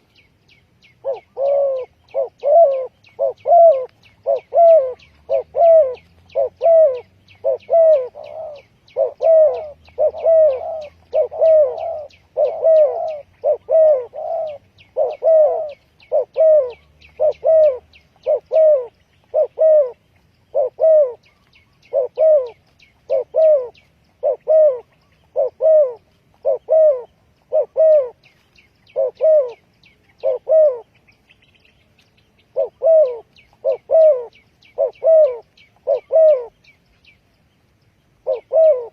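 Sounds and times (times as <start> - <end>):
dove cooing: 0.8 - 31.1, 32.4 - 36.8, 38.2 - 38.9.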